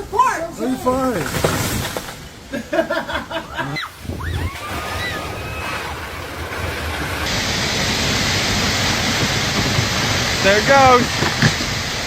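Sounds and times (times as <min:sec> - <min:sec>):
storm wind rushing: 0:00.8 - 0:12.0
whistle-like rising and falling sounds: 0:04.1 - 0:06.6.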